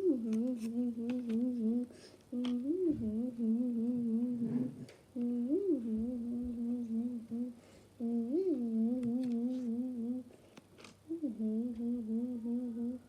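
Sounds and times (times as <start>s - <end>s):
wavering hummed tone: 0.0s - 10.3s, 11.1s - 13.0s.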